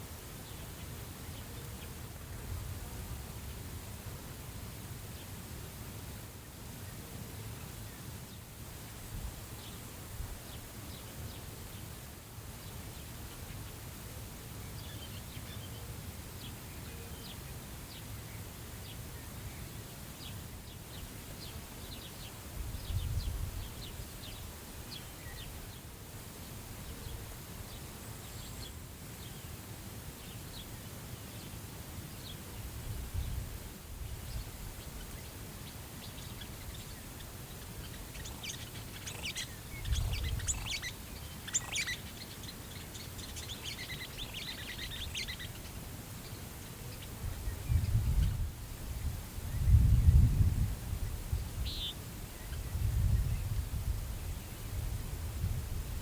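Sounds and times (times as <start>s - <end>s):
wind across grass: 0.0s - 56.0s
wind rumble on microphone: 21.8s - 24.6s, 32.6s - 35.0s, 39.0s - 41.2s, 47.2s - 56.0s.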